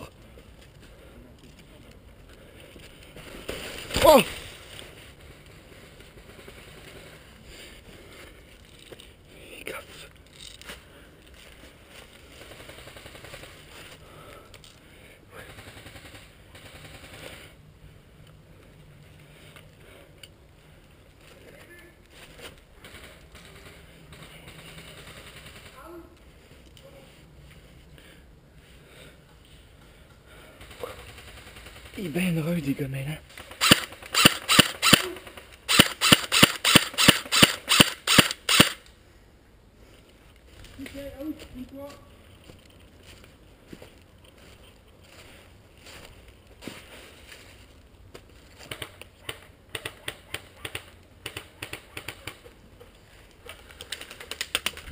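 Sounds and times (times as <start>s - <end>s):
airsoft guns firing: 33.3s - 38.8s.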